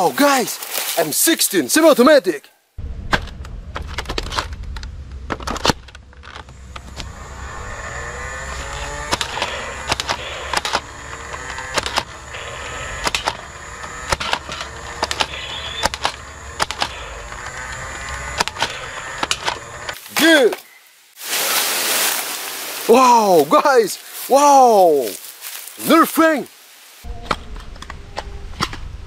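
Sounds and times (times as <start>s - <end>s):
steady low hum: 2.8s - 20.0s
sharp clicks: 8.7s - 20.0s.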